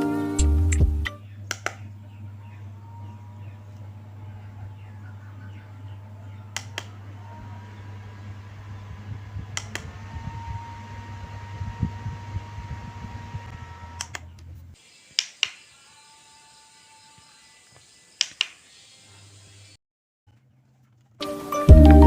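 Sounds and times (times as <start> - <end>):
desktop fan humming: 0.0 - 14.8
fan button clicking: 1.5 - 1.9, 6.6 - 6.9, 9.4 - 10.5, 14.0 - 14.3, 18.2 - 18.5.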